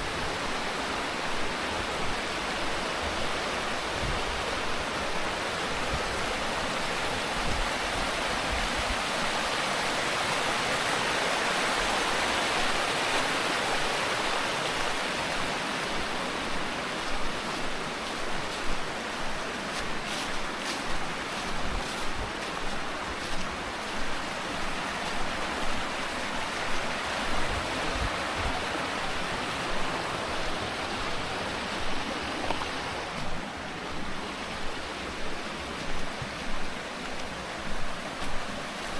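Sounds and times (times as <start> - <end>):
mountain stream rushing: 0.0 - 38.9
soft footsteps: 14.8 - 38.9.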